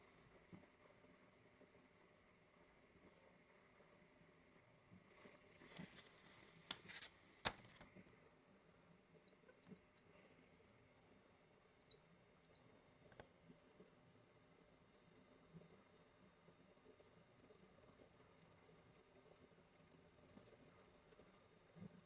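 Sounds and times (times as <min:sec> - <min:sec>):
ultrasonic cutter clicks and squeaks: 0:04.6 - 0:05.1, 0:09.3 - 0:10.0, 0:11.8 - 0:13.2.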